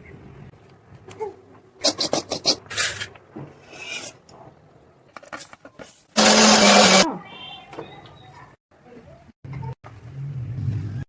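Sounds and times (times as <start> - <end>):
mixer grinder whirring: 6.2 - 7.1.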